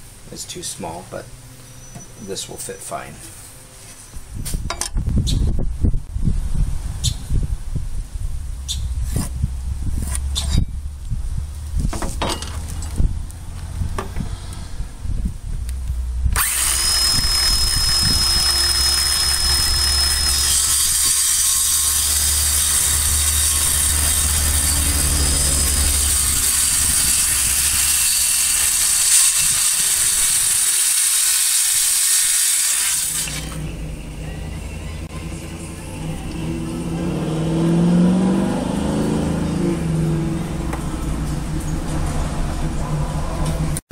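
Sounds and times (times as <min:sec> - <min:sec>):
power tool cutting wood: 0:16.4 - 0:33.6.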